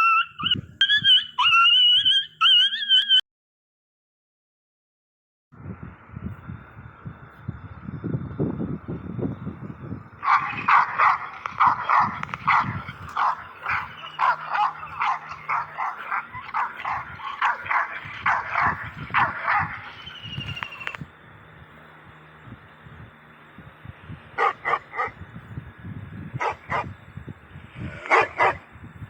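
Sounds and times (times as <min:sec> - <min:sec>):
dog barking: 0:00.0 - 0:03.0, 0:10.2 - 0:20.9, 0:24.4 - 0:25.2, 0:26.4 - 0:27.0, 0:28.0 - 0:28.6
low pulsing sounds: 0:05.6 - 0:29.0.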